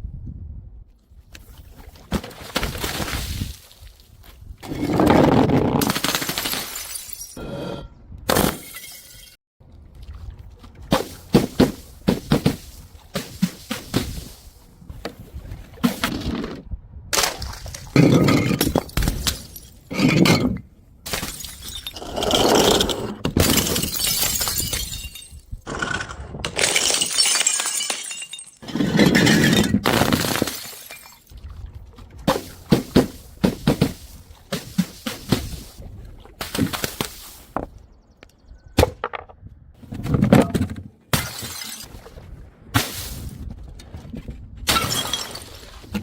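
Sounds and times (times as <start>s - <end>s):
glass bottles smashing: 6.0s - 7.4s, 8.4s - 9.4s, 21.1s - 22.1s, 23.4s - 31.3s, 41.2s - 41.9s, 44.7s - 45.6s
glass shards tinkling: 26.8s - 28.6s.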